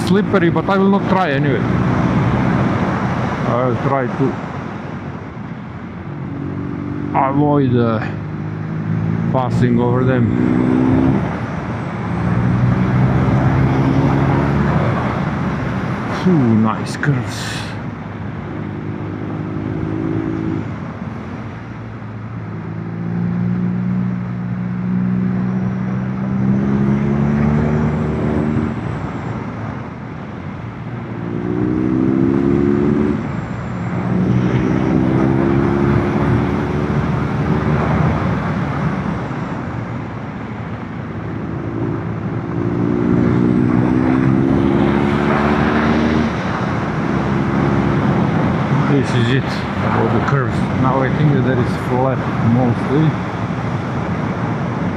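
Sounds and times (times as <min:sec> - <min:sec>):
motorcycle engine revving: 0:08.1 - 0:11.4, 0:18.7 - 0:20.6, 0:22.5 - 0:28.8, 0:31.1 - 0:33.3, 0:33.9 - 0:38.4, 0:41.4 - 0:49.1.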